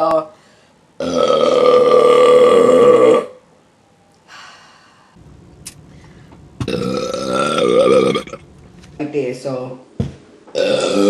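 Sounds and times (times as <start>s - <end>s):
short breath: 0.4s - 0.8s, 4.2s - 5.2s
woman burping loudly: 1.0s - 3.4s, 6.6s - 8.5s, 10.5s - 11.0s.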